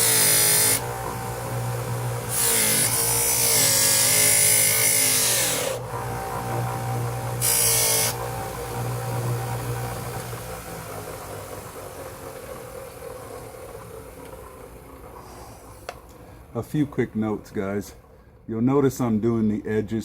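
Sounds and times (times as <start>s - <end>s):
grinder motor humming: 0.0s - 15.9s.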